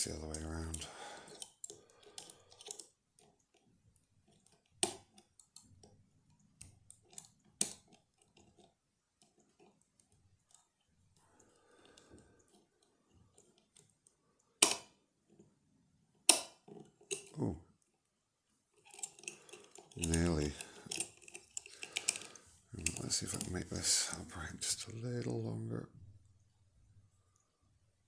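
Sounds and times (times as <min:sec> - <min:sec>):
lock pick ticks and scrapes: 0:00.0 - 0:03.6, 0:06.6 - 0:09.8, 0:14.6 - 0:14.9, 0:16.3 - 0:17.4, 0:18.8 - 0:24.2
lock clicks: 0:14.6 - 0:14.9.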